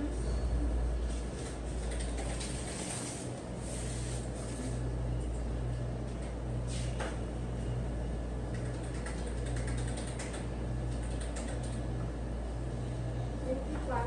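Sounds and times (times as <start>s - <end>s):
steady low hum: 0.0s - 14.0s
console keys clicking: 8.5s - 11.8s.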